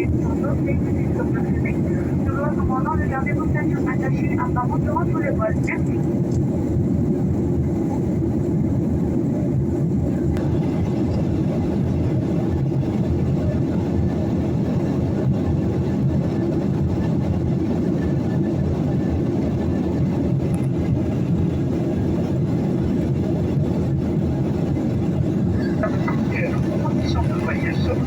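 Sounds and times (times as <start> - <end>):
airliner cabin engine rumble: 0.0 - 28.0.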